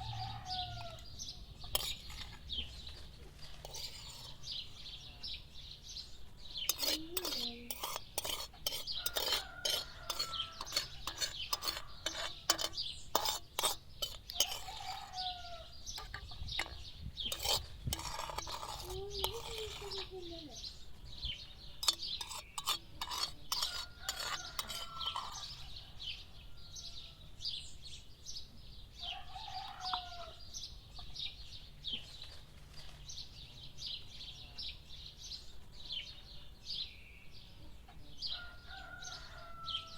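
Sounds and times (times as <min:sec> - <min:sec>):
metal utensil scraping pot: 0:00.0 - 0:05.0, 0:06.6 - 0:20.3, 0:21.8 - 0:25.8, 0:29.5 - 0:30.4
small birds chirping: 0:00.0 - 0:39.9.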